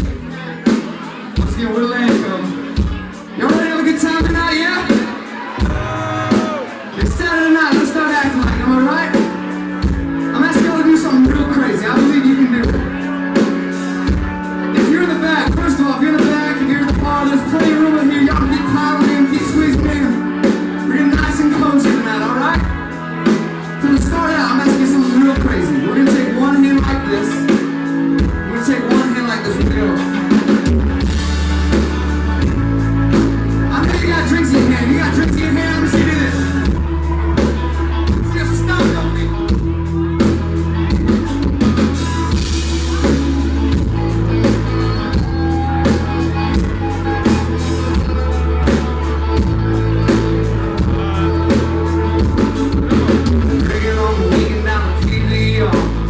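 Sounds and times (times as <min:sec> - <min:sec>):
country-rock band playing live: 0:00.0 - 0:56.0
heavy bass line: 0:28.0 - 0:56.0.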